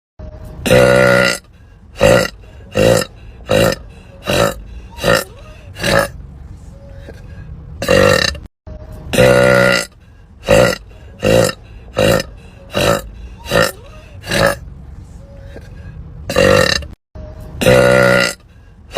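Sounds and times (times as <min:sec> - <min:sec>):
woman burping: 0:00.6 - 0:01.4, 0:02.0 - 0:06.1, 0:07.8 - 0:08.5, 0:10.5 - 0:14.6, 0:16.3 - 0:17.0, 0:17.6 - 0:18.4.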